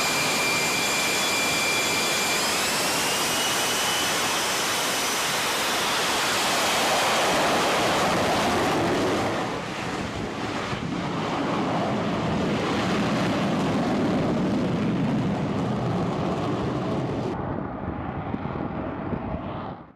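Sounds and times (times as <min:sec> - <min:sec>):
jet engine roar: 0:00.0 - 0:19.9
wind buffeting microphone: 0:06.5 - 0:19.9.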